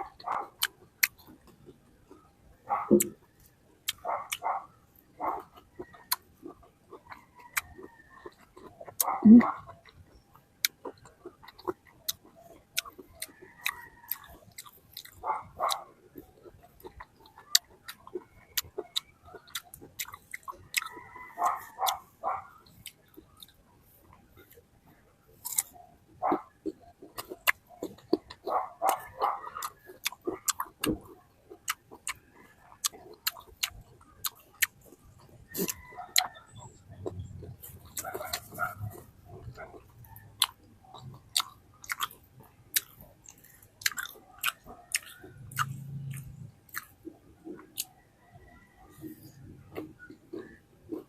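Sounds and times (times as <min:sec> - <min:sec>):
mouth clicks and smacks eating: 0:00.0 - 0:48.1, 0:48.8 - 0:51.0
chewing fruit: 0:00.0 - 0:51.0
wet mouth clicks and smacks: 0:02.9 - 0:03.2, 0:05.5 - 0:21.6, 0:39.3 - 0:48.0.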